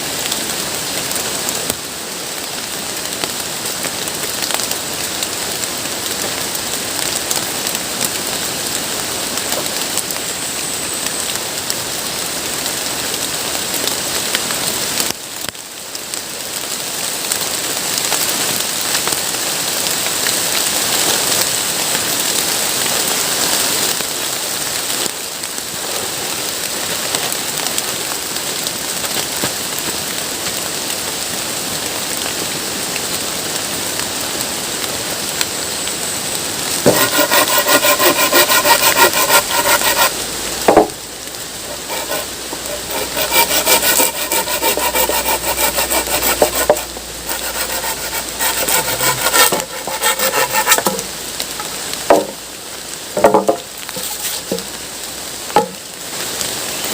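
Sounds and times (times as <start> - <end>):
rain hissing: 0.0 - 56.9
hand saw cutting wood: 36.8 - 40.9, 41.6 - 52.4, 53.2 - 54.7.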